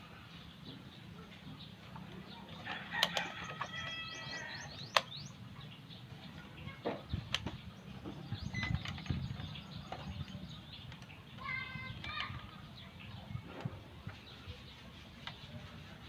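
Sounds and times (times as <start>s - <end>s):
small birds chirping: 0.0s - 16.0s
rooster crowing: 2.6s - 4.7s.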